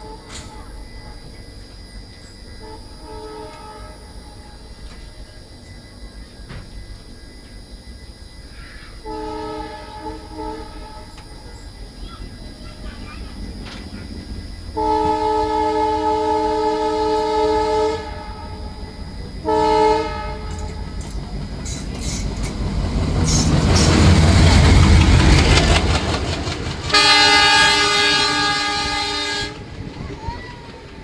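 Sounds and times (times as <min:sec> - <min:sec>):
train passing rumble: 0:00.0 - 0:31.0
locomotive horn blast: 0:02.6 - 0:04.2, 0:09.0 - 0:11.2, 0:14.8 - 0:18.8, 0:19.4 - 0:21.0, 0:26.9 - 0:29.7
wheel clatter on rail joints: 0:20.4 - 0:26.9.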